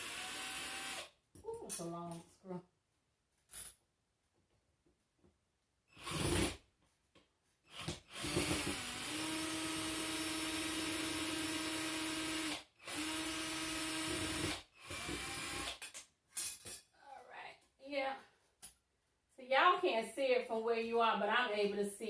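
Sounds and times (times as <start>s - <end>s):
power drill driving screw: 0.0s - 1.1s, 6.0s - 6.6s, 7.7s - 15.8s.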